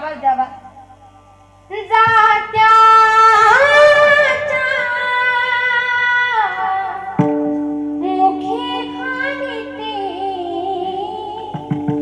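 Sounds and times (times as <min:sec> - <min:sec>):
woman singing devotional song: 0:01.7 - 0:07.2, 0:08.0 - 0:12.0.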